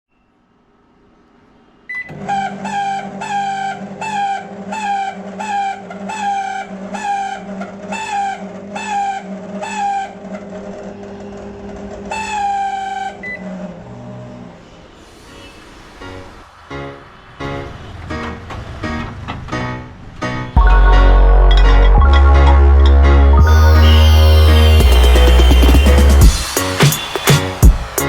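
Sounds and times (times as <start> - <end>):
microwave beep: 1.9 - 2.1
high falling squeal: 14.6 - 17.6, 23.4 - 28.0.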